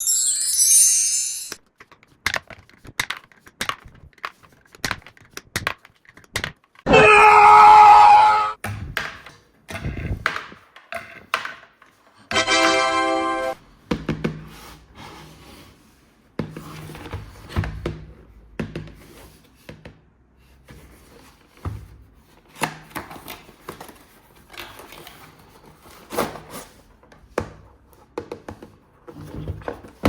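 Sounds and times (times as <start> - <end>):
plastic toys and packaging handled: 1.6 - 6.9, 20.4 - 30.0.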